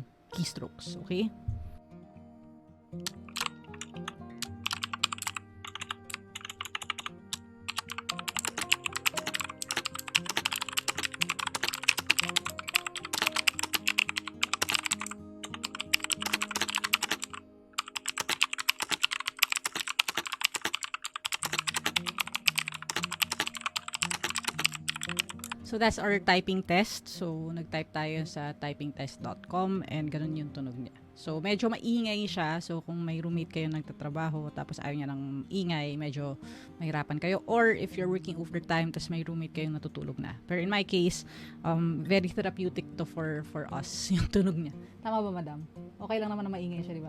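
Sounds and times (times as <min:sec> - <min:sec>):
typing on clicky keyboard: 0:03.1 - 0:25.6.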